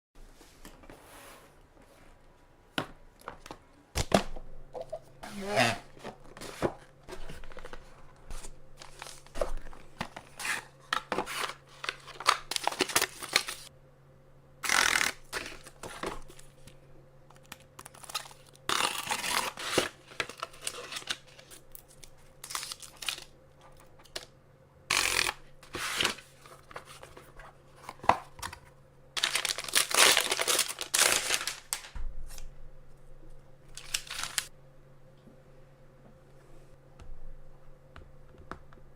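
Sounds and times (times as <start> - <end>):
faint steady hum: 0.2 - 38.9
packaging ripping and crinkling: 8.8 - 13.7, 17.3 - 23.3, 29.2 - 31.9, 33.7 - 34.5.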